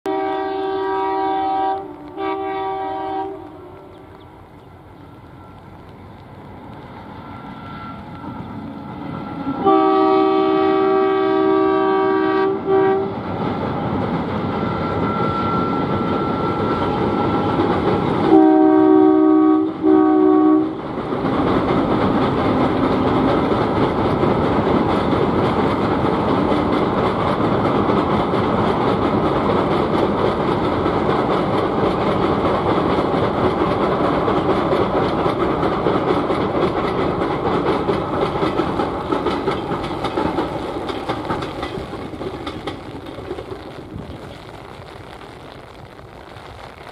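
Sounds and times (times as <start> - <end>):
locomotive horn blasts: 0.1 - 3.9, 9.3 - 13.2, 18.3 - 20.8
diesel locomotive running under power: 0.1 - 44.0
coaches clacking on rails: 0.1 - 44.4.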